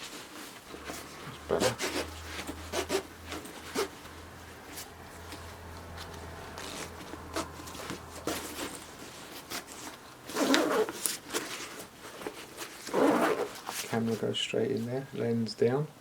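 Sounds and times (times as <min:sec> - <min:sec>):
fabric rustling: 0:00.0 - 0:14.4
zip being pulled: 0:00.7 - 0:04.1, 0:06.0 - 0:11.5, 0:12.7 - 0:13.8.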